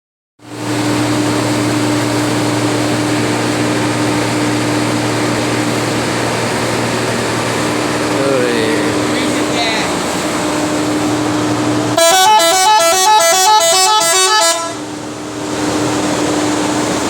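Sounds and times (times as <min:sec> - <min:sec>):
bus engine running steadily: 0:00.4 - 0:17.0.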